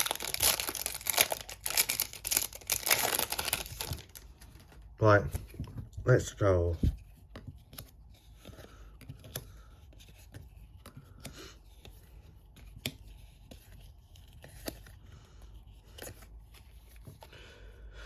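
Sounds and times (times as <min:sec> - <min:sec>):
packaging crinkling: 0:00.0 - 0:04.4.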